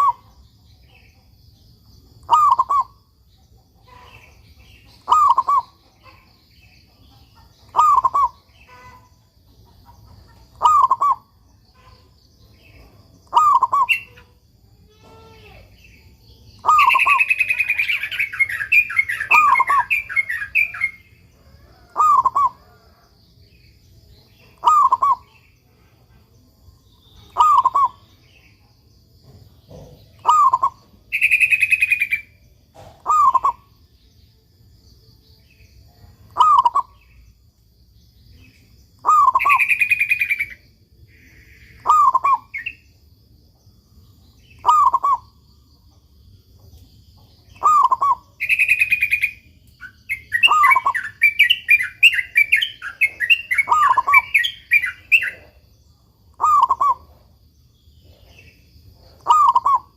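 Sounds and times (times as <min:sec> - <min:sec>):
birds chirping: 0:00.0 - 0:59.9
dove cooing: 0:02.2 - 0:03.0, 0:05.0 - 0:06.3, 0:07.6 - 0:09.1, 0:10.5 - 0:12.0, 0:13.2 - 0:14.3, 0:16.6 - 0:23.0, 0:24.6 - 0:25.3, 0:27.3 - 0:28.0, 0:29.7 - 0:32.2, 0:32.8 - 0:33.7, 0:36.4 - 0:36.9, 0:39.0 - 0:40.5, 0:41.8 - 0:42.8, 0:44.6 - 0:45.2, 0:47.5 - 0:49.3, 0:50.2 - 0:55.6, 0:56.4 - 0:57.3, 0:58.1 - 0:59.9.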